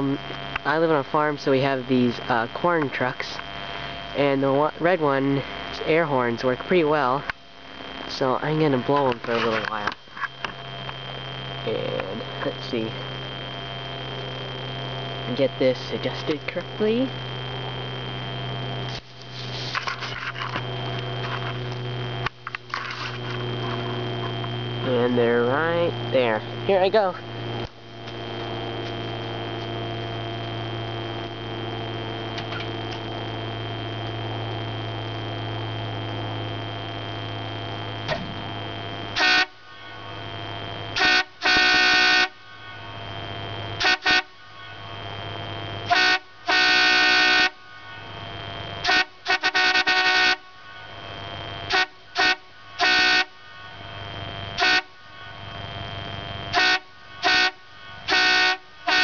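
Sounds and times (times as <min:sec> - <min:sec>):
steady low hum: 0:00.0 - 0:59.0
truck air horn blasts: 0:39.2 - 0:39.6, 0:41.0 - 0:42.4, 0:43.8 - 0:44.3, 0:45.9 - 0:47.6, 0:48.8 - 0:50.4, 0:51.7 - 0:53.3, 0:54.6 - 0:54.9, 0:56.5 - 0:59.0.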